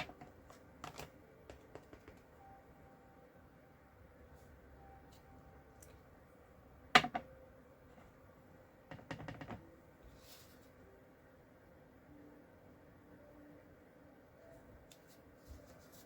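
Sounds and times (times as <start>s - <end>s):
stamping supplies clicking and tapping: 0.0s - 2.3s.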